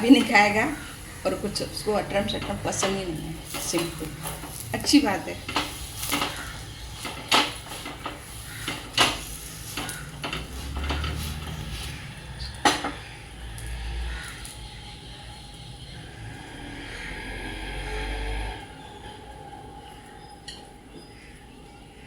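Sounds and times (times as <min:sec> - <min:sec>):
utensils and dishes clinking: 0:00.0 - 0:13.0, 0:20.4 - 0:21.1.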